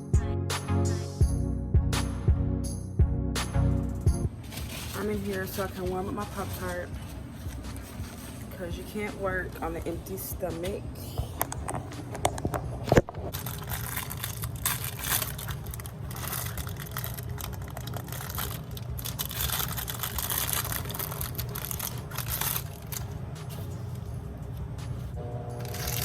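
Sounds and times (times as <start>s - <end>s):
crinkling and rustling: 4.3s - 26.0s
microwave oven humming: 5.7s - 26.0s.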